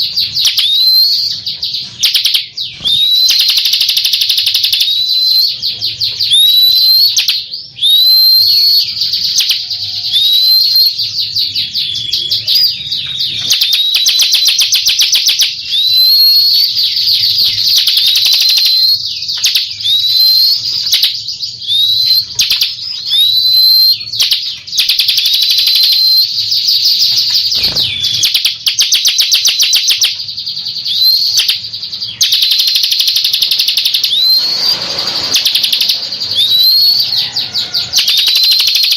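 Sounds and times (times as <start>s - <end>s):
bird trilling and whistling: 0.0s - 38.9s.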